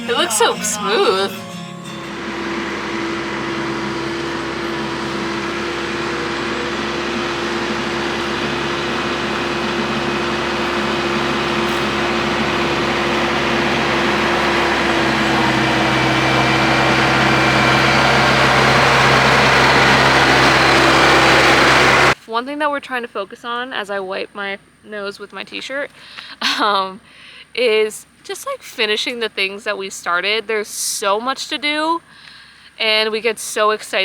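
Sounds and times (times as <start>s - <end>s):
engine running: 0.0s - 22.2s.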